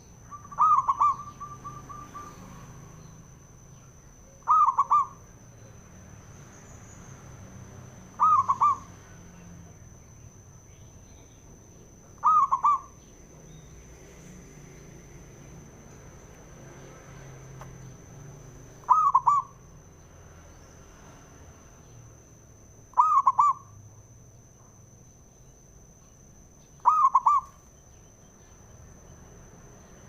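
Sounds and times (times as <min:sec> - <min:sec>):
dove cooing: 0:00.0 - 0:03.1, 0:04.3 - 0:05.4, 0:08.1 - 0:10.0, 0:11.9 - 0:13.6, 0:18.8 - 0:19.6, 0:22.9 - 0:23.8, 0:26.8 - 0:27.6
faint high whine: 0:00.0 - 0:30.0.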